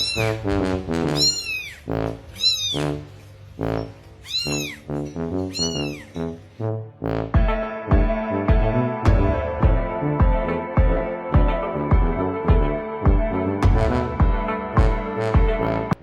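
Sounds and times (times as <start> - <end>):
cat meowing: 0.0 - 0.4, 1.1 - 3.0, 4.2 - 6.2
background music: 3.6 - 16.0
music with a beat: 7.4 - 16.0.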